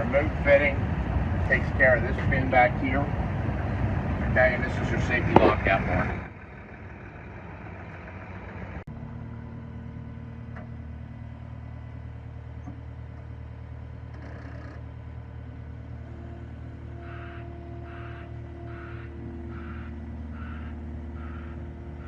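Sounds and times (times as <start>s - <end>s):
diesel engine idling: 0.0s - 22.0s
higher steady tone: 15.5s - 22.0s.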